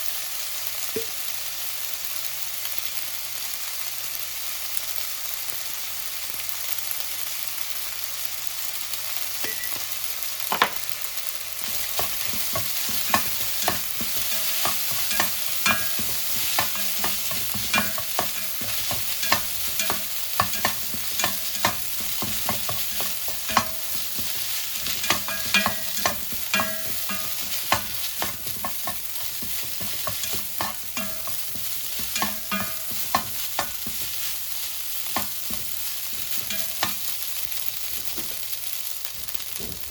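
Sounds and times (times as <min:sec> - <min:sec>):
rice sizzling in a pan: 0:00.0 - 0:39.9
utensil knocking and scraping pan: 0:11.6 - 0:37.2.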